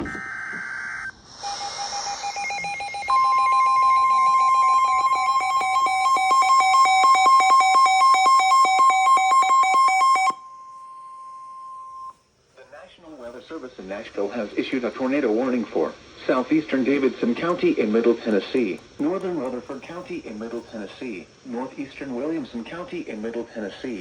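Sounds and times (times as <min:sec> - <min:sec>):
steady high tone: 0:00.8 - 0:12.2
fast-pulsing ringing alert tone: 0:01.4 - 0:10.6.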